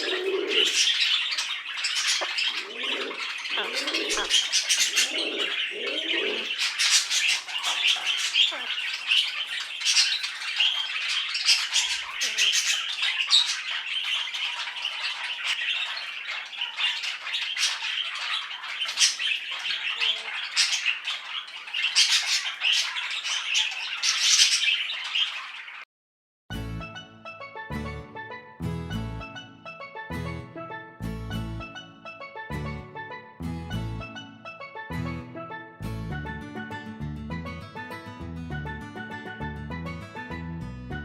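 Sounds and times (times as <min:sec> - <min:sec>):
pet birds chattering and squawking: 0:00.0 - 0:25.8
music: 0:26.5 - 0:41.0.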